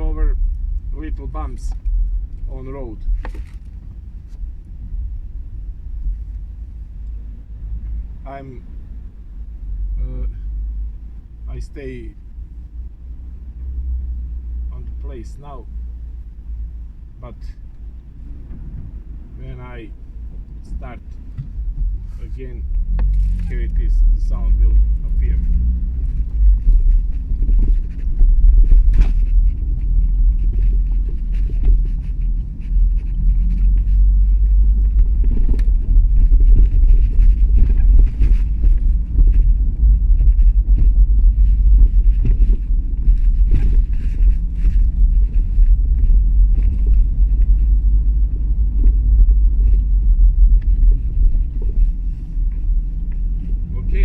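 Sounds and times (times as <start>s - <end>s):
car road and engine rumble: 0.0s - 54.0s
knocks and clunks from car: 17.7s - 19.4s, 20.2s - 24.2s, 25.2s - 32.8s, 33.7s - 53.7s.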